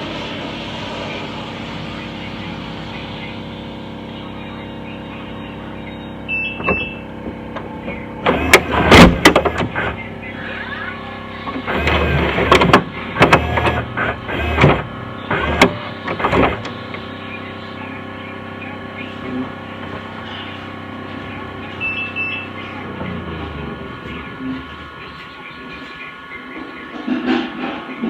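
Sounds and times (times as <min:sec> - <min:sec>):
video player humming: 0:00.0 - 0:28.0
tape mechanism whirring and clunking: 0:06.3 - 0:17.4, 0:18.7 - 0:26.4.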